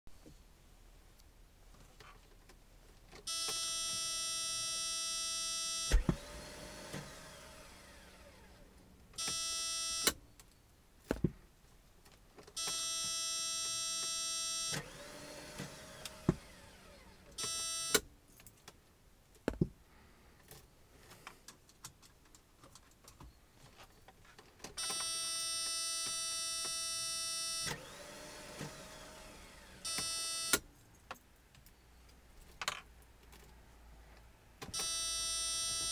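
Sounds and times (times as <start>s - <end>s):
starter motor whining: 5.9s - 8.6s, 14.7s - 17.6s, 27.6s - 30.6s
dashboard warning tone: 9.2s - 10.2s, 17.4s - 18.0s, 29.8s - 30.6s, 34.8s - 35.9s.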